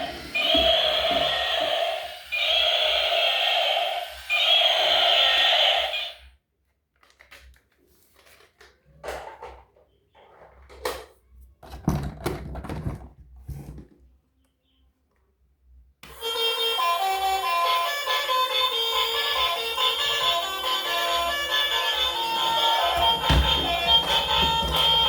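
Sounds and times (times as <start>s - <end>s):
toy electronic tone: 0.0s - 6.3s, 16.1s - 25.0s.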